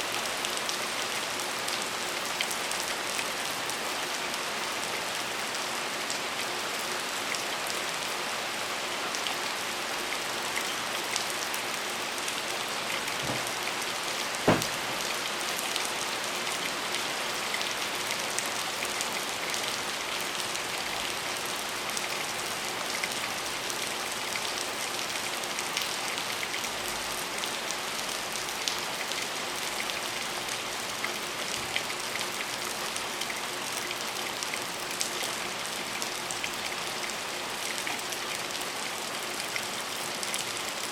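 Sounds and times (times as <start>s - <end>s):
rain on a hard surface: 0.0s - 40.9s
sharp tap: 14.5s - 14.8s.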